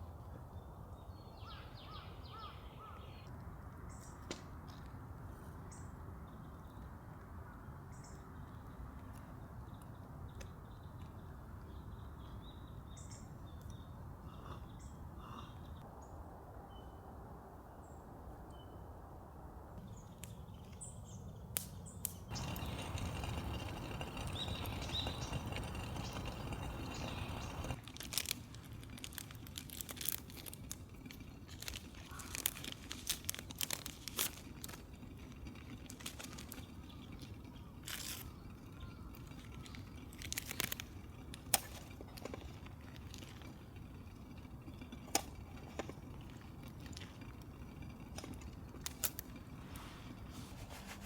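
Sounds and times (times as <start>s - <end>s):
small birds chirping: 21.9s - 27.8s
crinkling and crackling clicks: 22.3s - 51.0s.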